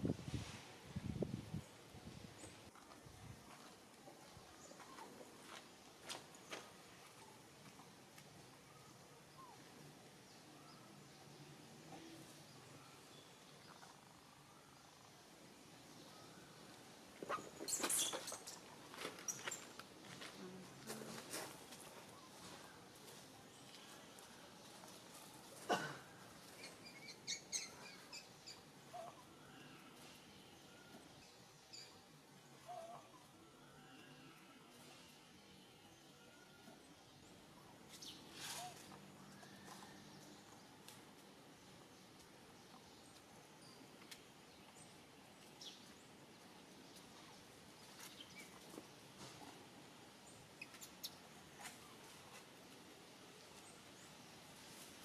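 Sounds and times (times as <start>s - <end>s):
outdoor background noise: 0.0s - 55.0s
faint chirps: 26.0s - 40.8s.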